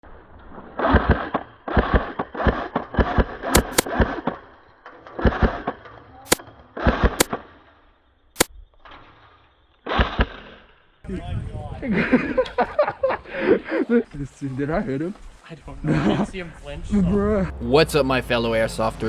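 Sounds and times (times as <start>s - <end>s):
single sharp gun cracks: 1.0s - 4.4s.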